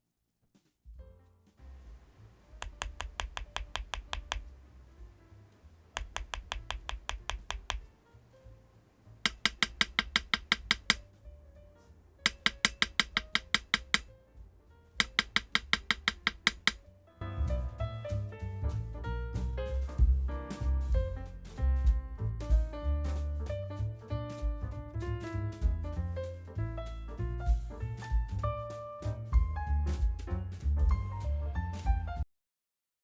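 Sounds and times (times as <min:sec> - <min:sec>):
mechanical keyboard keystrokes: 0:02.5 - 0:04.6, 0:06.0 - 0:07.9, 0:09.3 - 0:11.0, 0:12.3 - 0:14.1, 0:15.0 - 0:16.8.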